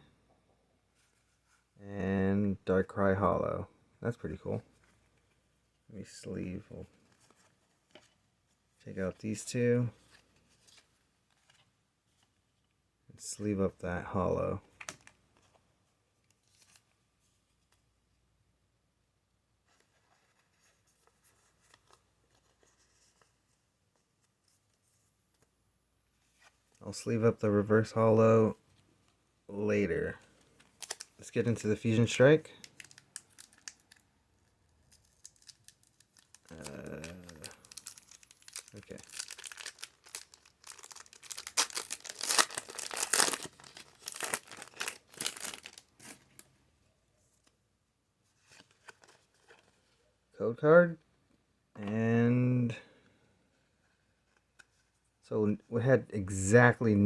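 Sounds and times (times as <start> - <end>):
trading card rustling: 29.7 - 46.6, 48.3 - 50.1
foil wrapper crinkling and tearing: 30.6 - 31.3, 32.6 - 34.0, 34.8 - 46.4.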